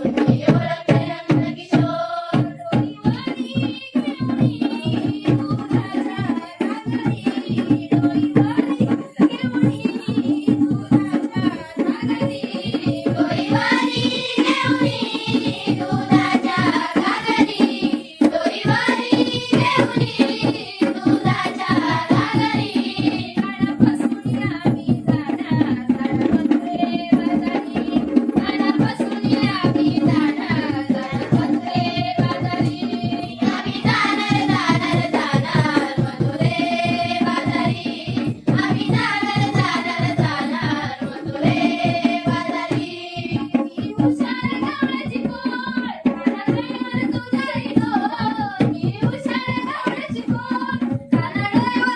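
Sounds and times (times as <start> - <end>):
fast hand-drum beat: 0.0 - 51.9
person singing folk song: 0.0 - 51.9.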